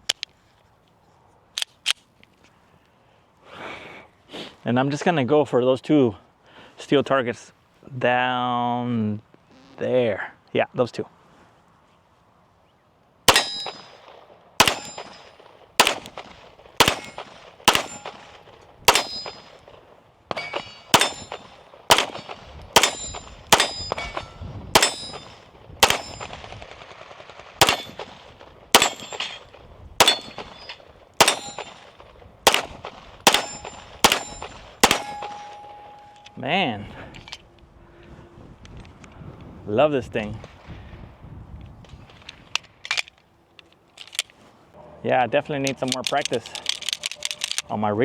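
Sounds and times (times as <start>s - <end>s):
bullets ringing on steel targets: 13.3s - 19.6s, 20.3s - 26.4s, 27.6s - 36.5s
pistol shots: 13.3s - 36.4s.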